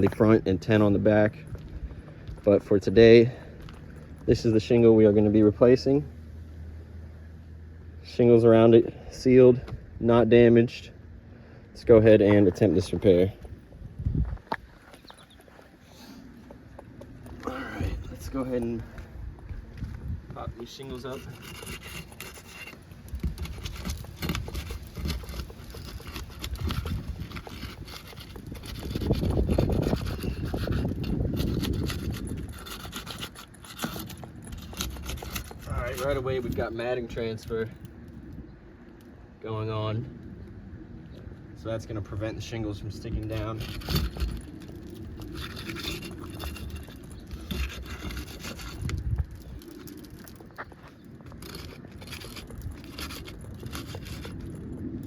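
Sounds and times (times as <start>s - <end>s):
roof shingles cracking and scraping: 20.7s - 36.2s, 43.2s - 55.0s.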